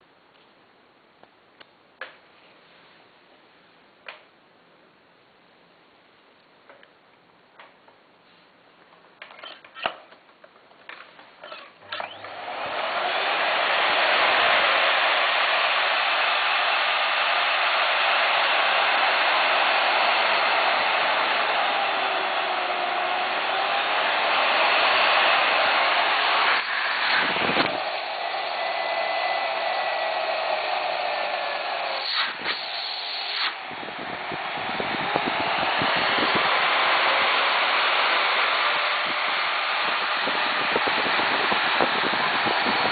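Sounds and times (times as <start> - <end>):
vacuum cleaner motor running: 11.8 - 42.9.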